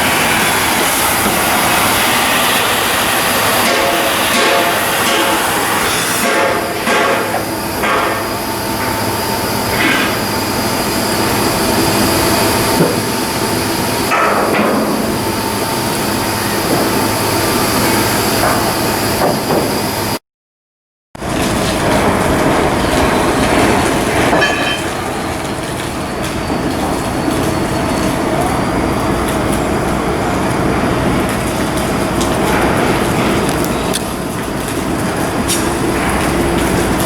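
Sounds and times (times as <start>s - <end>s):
loud mechanical din: 0.0s - 19.9s.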